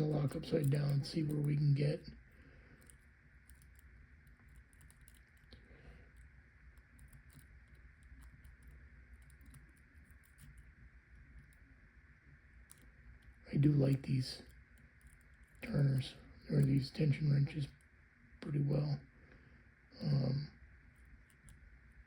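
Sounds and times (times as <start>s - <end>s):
lock pick clicks and scratches: 2.8s - 11.6s, 12.6s - 15.7s, 20.9s - 22.0s.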